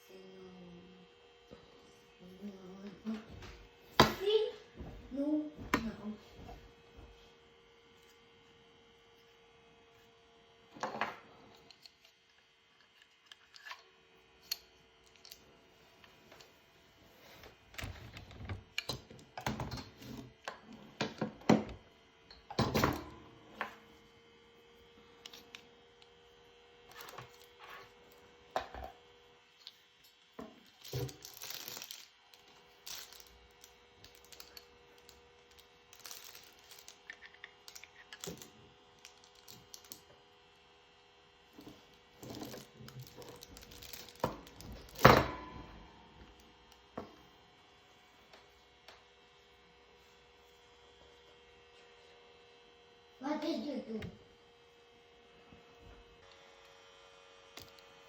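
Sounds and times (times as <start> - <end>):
packaging crinkling: 30.7 - 38.5, 42.2 - 45.0.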